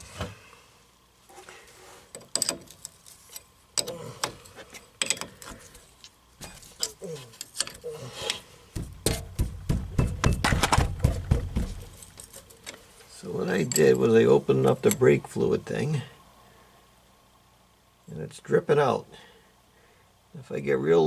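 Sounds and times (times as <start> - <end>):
metal tools clicking and knocking: 2.2 - 3.9, 5.0 - 5.4, 6.8 - 7.8, 8.8 - 12.8.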